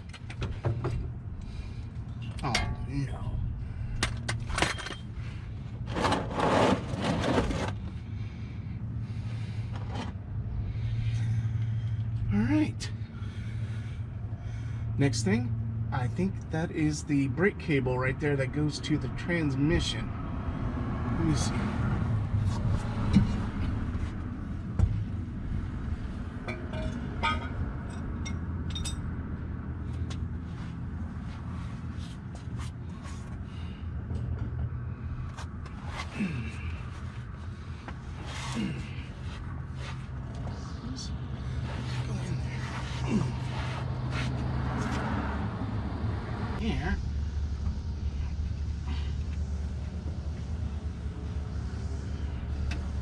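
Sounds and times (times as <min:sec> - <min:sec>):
steady low rumble: 0:00.0 - 0:06.0, 0:07.8 - 0:53.0
steady low hum: 0:00.0 - 0:53.0
scraping rustling sound: 0:05.8 - 0:07.8.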